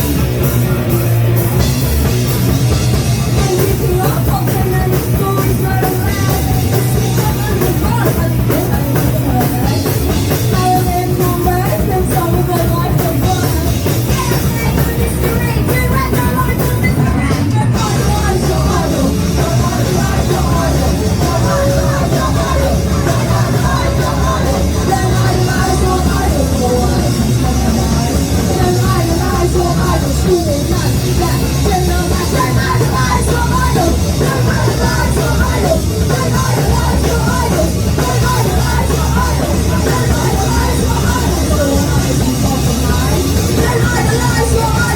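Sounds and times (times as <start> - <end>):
bass guitar: 0.0 - 44.9
distorted electric guitars: 0.0 - 44.9
drum kit: 0.0 - 44.9
shouted singing: 10.5 - 44.9.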